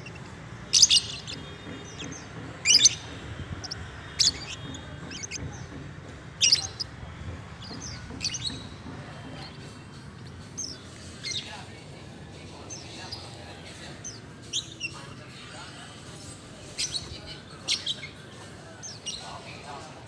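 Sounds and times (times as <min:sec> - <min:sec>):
bird chattering calls: 0:00.0 - 0:09.7.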